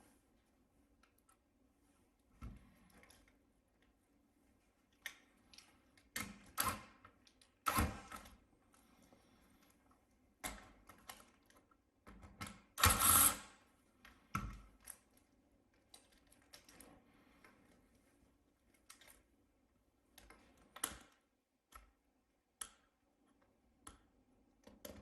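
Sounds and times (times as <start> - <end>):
clicks and taps of laptop parts: 22.6 - 25.0.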